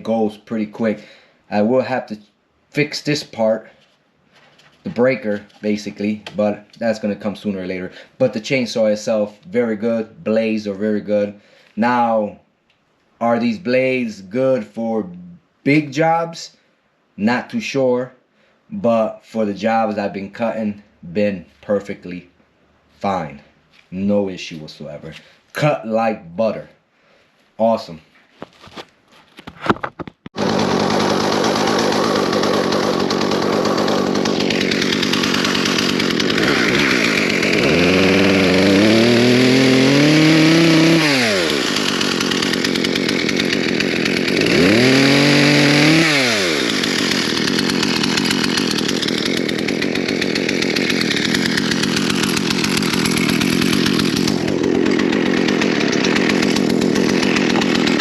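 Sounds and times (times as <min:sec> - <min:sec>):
chainsaw running: 0:30.3 - 0:58.0.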